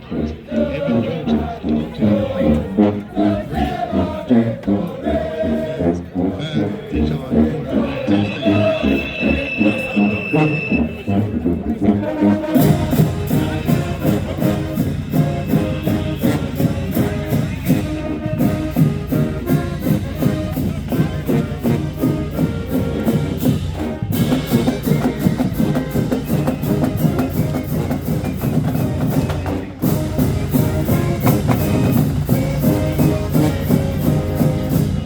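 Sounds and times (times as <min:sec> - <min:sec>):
brass holding chords: 0:00.0 - 0:35.0
drums and cymbals beat: 0:12.5 - 0:35.0.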